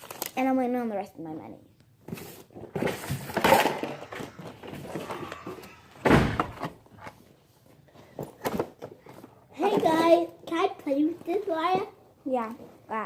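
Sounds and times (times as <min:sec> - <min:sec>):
loud thump: 0:05.8 - 0:06.8.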